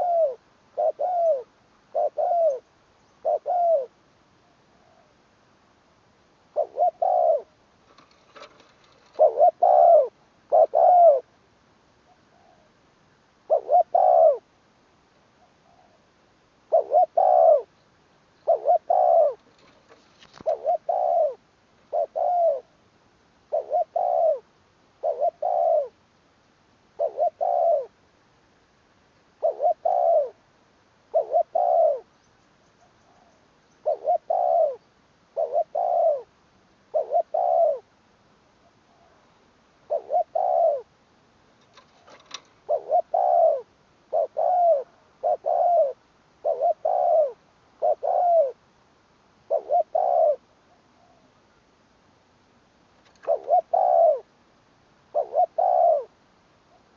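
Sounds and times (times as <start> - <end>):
dove cooing: 0.0 - 5.2, 6.5 - 11.3, 12.1 - 12.8, 13.5 - 14.5, 15.4 - 17.7, 18.4 - 22.8, 23.5 - 26.0, 27.0 - 28.0, 29.3 - 30.4, 31.1 - 32.1, 32.8 - 36.3, 36.9 - 37.9, 38.6 - 40.9, 41.6 - 48.6, 49.4 - 51.3, 53.1 - 54.3, 55.1 - 56.9.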